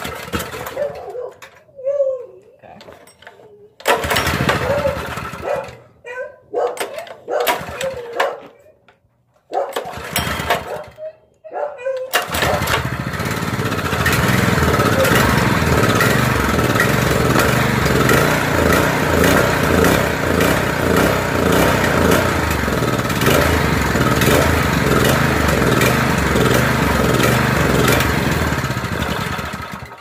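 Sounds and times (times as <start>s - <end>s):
small engine running rough and surging: 3.9s - 5.8s, 9.8s - 11.0s, 12.2s - 30.0s.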